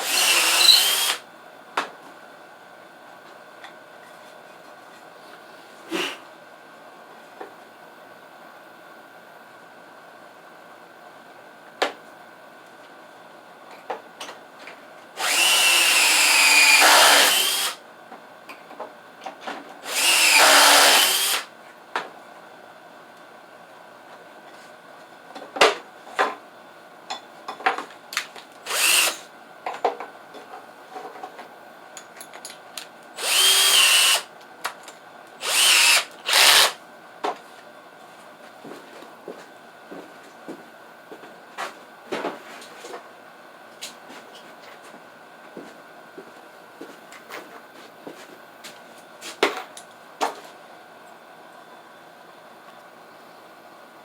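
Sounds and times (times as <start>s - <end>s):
power drill whining: 0.0s - 1.2s, 15.2s - 17.8s, 19.8s - 21.5s, 28.6s - 29.2s, 33.2s - 34.3s, 35.4s - 36.8s.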